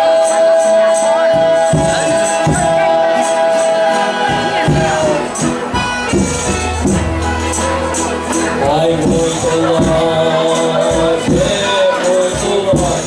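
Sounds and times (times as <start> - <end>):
jingling tambourine: 0.0 - 13.0
low drum thumps: 4.3 - 10.3.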